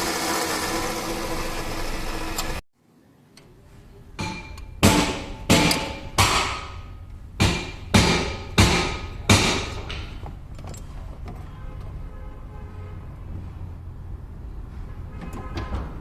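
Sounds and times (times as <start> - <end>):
hammer striking metal: 4.2 - 10.2.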